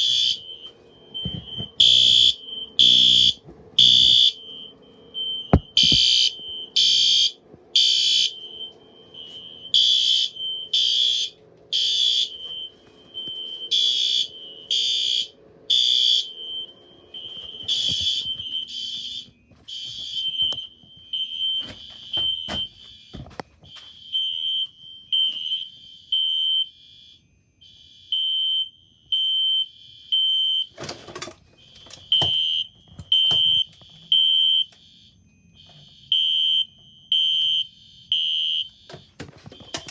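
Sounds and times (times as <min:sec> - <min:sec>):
steady alarm horn tone: 0:00.0 - 0:30.7
fire alarm horn blasts: 0:00.0 - 0:30.9, 0:31.6 - 0:39.9.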